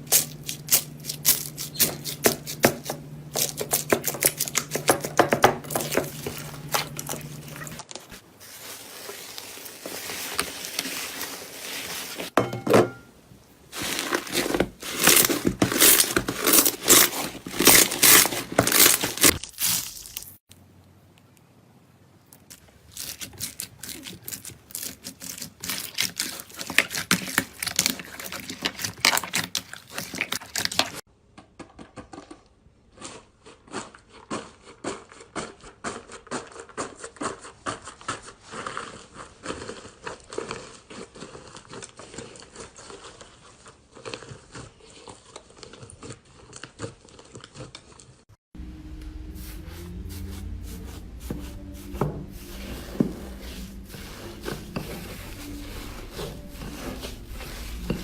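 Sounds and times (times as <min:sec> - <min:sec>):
steady low hum: 0:00.0 - 0:07.8, 0:48.6 - 0:58.0.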